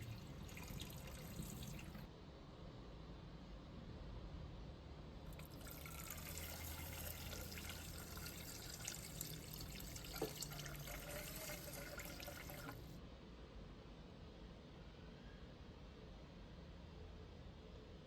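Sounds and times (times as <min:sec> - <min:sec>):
tap running into a sink: 0:00.0 - 0:02.1, 0:05.3 - 0:12.9.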